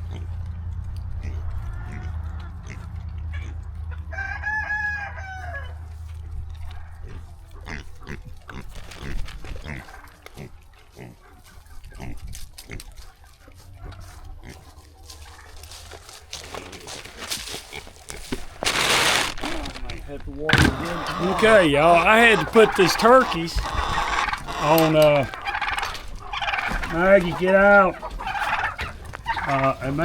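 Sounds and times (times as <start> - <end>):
pig chewing feed: 0.0 - 4.3, 6.0 - 30.0
rooster crowing: 4.0 - 5.9.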